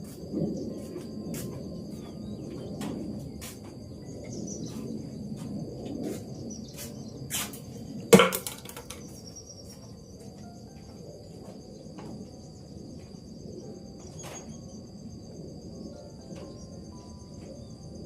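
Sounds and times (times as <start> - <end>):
high-pitched insect chirr: 0.0 - 18.0
loud knock: 8.1 - 8.9.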